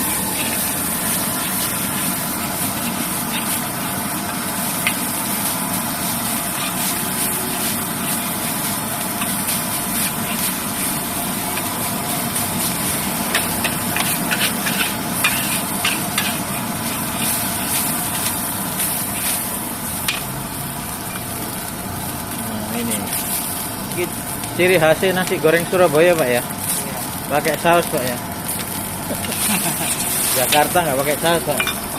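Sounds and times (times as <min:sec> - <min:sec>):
metal spatula scraping a wok: 0:00.0 - 0:11.7, 0:12.6 - 0:19.5, 0:29.3 - 0:30.8
rice sizzling in a wok: 0:00.0 - 0:31.9.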